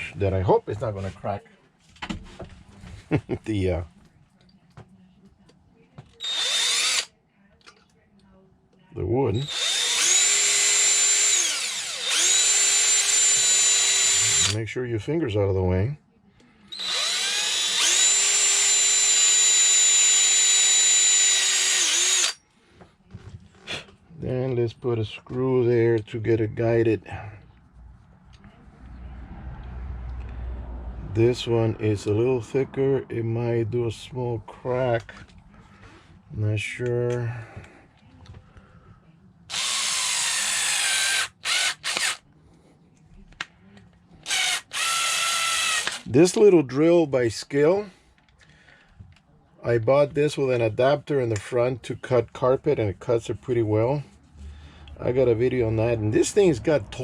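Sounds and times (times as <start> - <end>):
cordless drill whining: 6.2 - 7.1, 9.4 - 14.6, 16.7 - 22.4, 39.5 - 42.2, 44.2 - 46.1.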